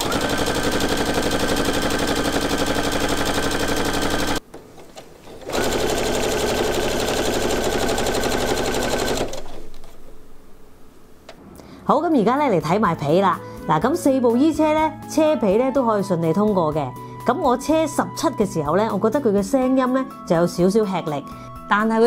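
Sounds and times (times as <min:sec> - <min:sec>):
sewing machine stitching: 0:00.0 - 0:09.8.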